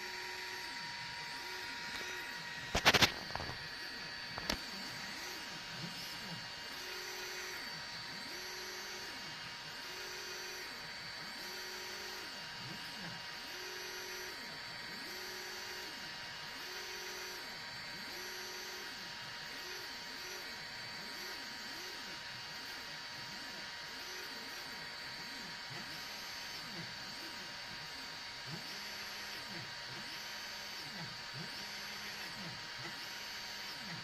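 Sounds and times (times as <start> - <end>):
printer stepper motors whirring: 0.0 - 34.0.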